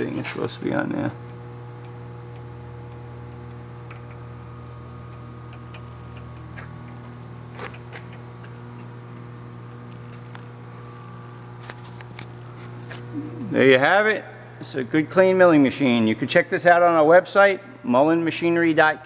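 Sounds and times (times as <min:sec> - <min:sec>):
milling machine motor humming: 0:00.0 - 0:16.4
light clicks and ticks: 0:01.3 - 0:04.5.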